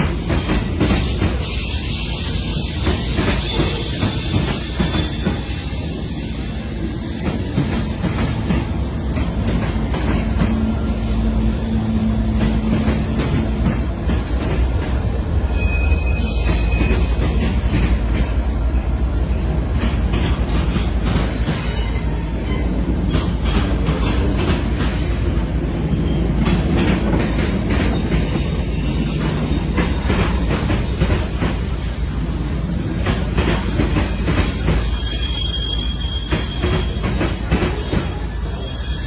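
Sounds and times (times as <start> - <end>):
train rumbling past: 0.0 - 39.0
high-pitched wheel squeals: 1.0 - 7.8, 15.5 - 17.5, 21.4 - 22.8, 34.2 - 37.0, 37.8 - 39.0.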